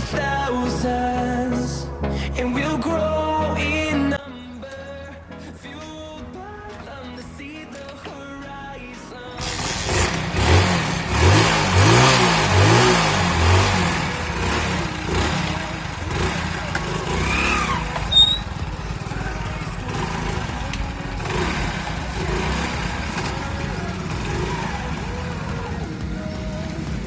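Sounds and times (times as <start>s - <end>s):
motorcycle engine revving: 9.4s - 27.0s.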